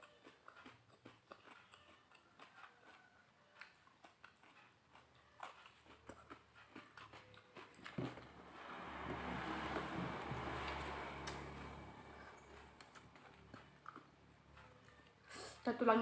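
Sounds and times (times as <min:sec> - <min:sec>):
person chewing with wet clicks: 0:00.0 - 0:09.0, 0:10.6 - 0:15.3.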